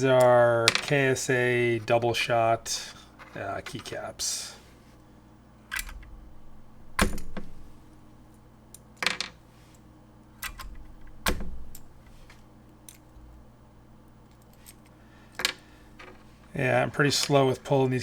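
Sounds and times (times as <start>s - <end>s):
keycaps being pulled off: 10.4s - 13.4s.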